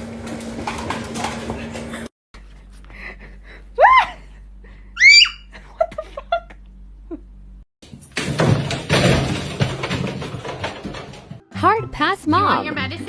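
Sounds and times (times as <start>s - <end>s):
short lower yelps: 5.0s - 5.4s.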